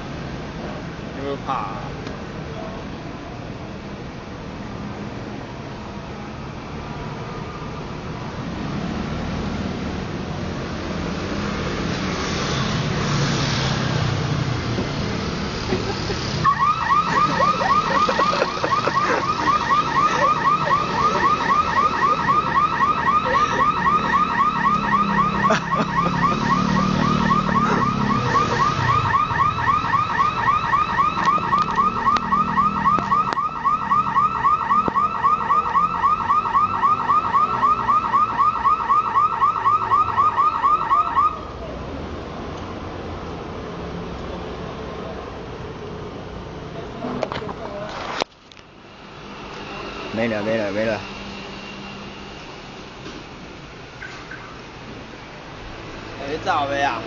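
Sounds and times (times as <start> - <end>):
car alarm chirps: 16.4 - 41.4, 54.0 - 54.6.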